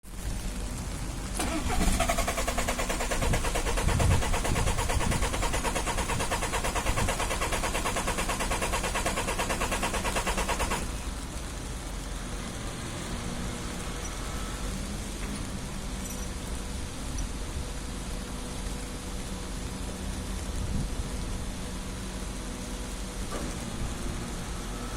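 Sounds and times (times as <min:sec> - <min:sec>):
engine idling: 0:01.2 - 0:11.1
engine starter cranking: 0:01.4 - 0:10.9.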